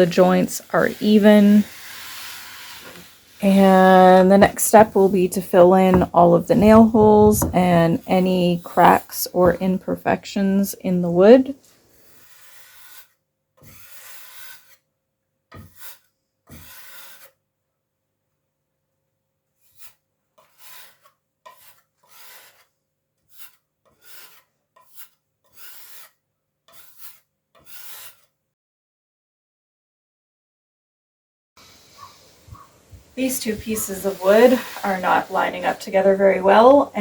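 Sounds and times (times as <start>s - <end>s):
putty knife scraping filler: 2.9s - 8.8s, 12.1s - 14.8s, 15.6s - 17.4s, 19.6s - 28.4s.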